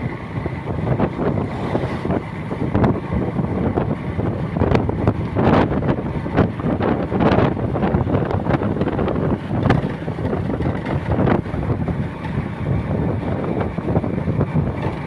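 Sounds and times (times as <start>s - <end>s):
vehicle rumble: 0.0s - 15.0s
wind buffeting microphone: 0.0s - 15.0s.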